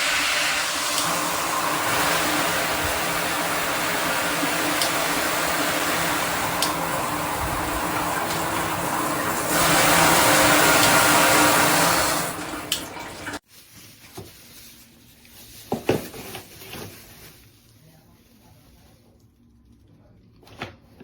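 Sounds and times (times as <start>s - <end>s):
water spraying from shower head: 0.0s - 13.4s.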